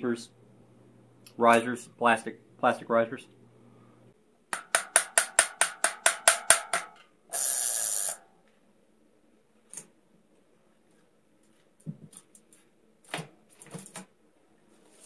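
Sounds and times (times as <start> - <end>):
bicycle freewheel ratcheting clicks: 7.3 - 8.2.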